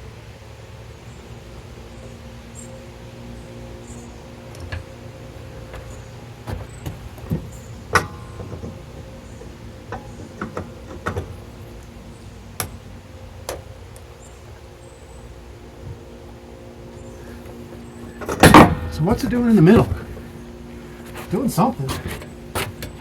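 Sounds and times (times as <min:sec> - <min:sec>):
low machine hum: 0:00.0 - 0:23.0
metal knocks and clanks: 0:05.8 - 0:11.5, 0:18.2 - 0:20.1.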